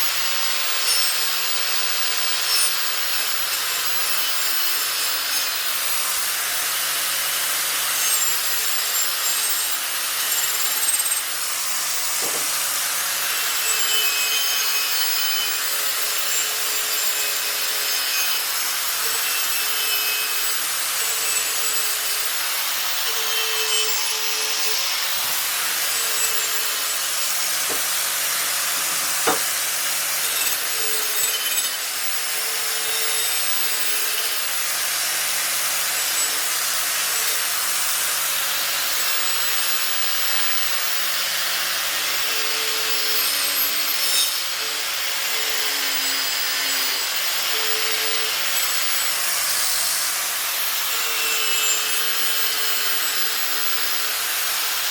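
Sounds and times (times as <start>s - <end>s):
abrasive power tool rasping: 0.0s - 54.9s.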